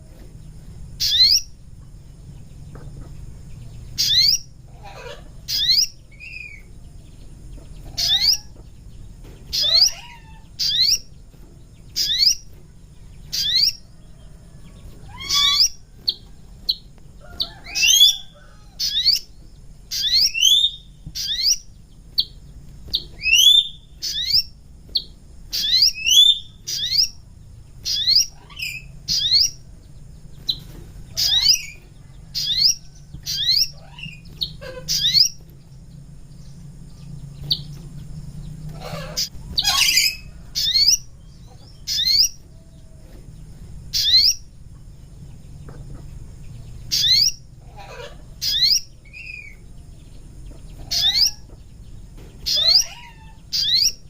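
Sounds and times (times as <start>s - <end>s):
bird whistling calls: 1.0s - 1.5s, 4.0s - 6.7s, 7.8s - 8.6s, 9.5s - 11.1s, 12.0s - 12.5s, 13.3s - 13.8s, 15.0s - 16.8s, 17.4s - 19.3s, 19.9s - 27.2s, 27.8s - 29.6s, 31.2s - 35.4s, 38.7s - 41.1s, 41.8s - 42.4s, 43.9s - 44.4s, 46.9s - 49.6s, 50.8s - 51.5s, 52.4s - 54.0s.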